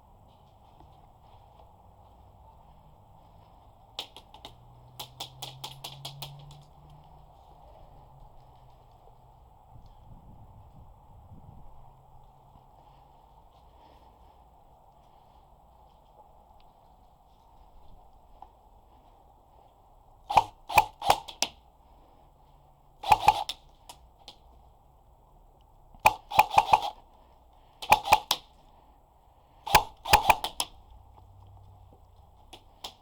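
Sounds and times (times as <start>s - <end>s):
airsoft guns firing: 4.0s - 6.7s, 20.3s - 21.6s, 23.0s - 23.7s, 26.0s - 27.0s, 27.8s - 28.6s, 29.7s - 30.8s.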